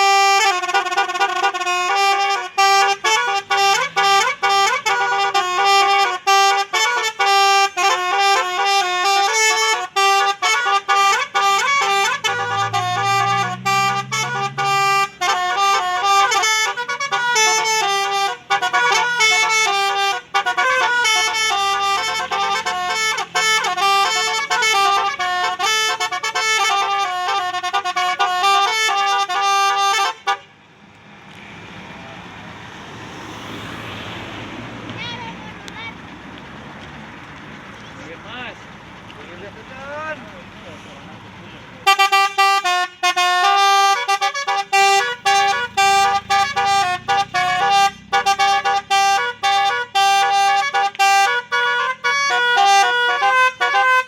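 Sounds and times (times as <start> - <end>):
bus musical horn melody: 0.0 - 30.6, 41.4 - 54.0.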